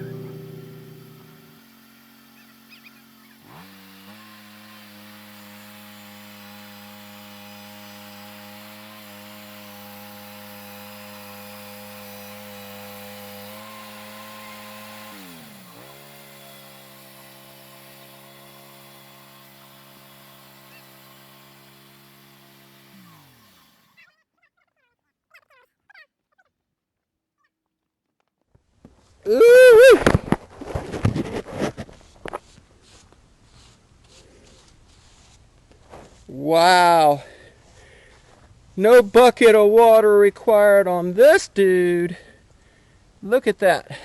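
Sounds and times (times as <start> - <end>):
sawmill engine cutting log: 0.0 - 24.0.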